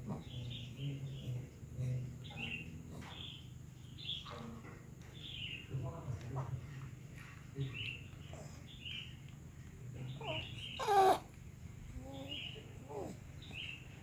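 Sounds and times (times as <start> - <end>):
baby cooing and babbling: 10.2 - 11.3.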